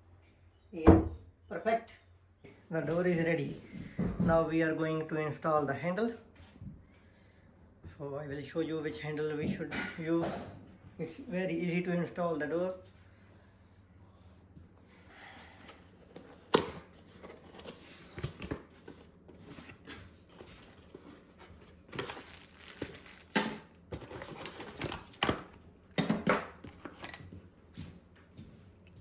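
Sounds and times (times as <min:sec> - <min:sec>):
packaging rustling: 0:16.2 - 0:25.6.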